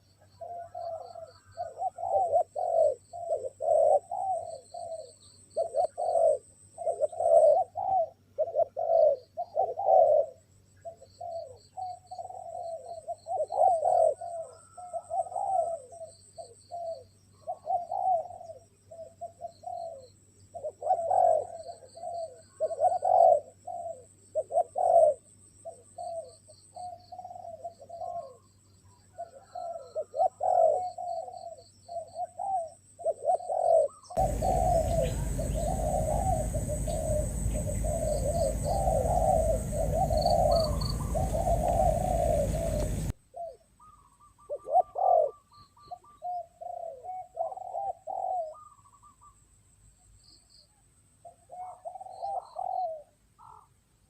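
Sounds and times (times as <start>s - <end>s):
doves cooing: 0.4s - 15.9s, 17.5s - 20.0s, 20.6s - 25.2s, 29.1s - 48.9s.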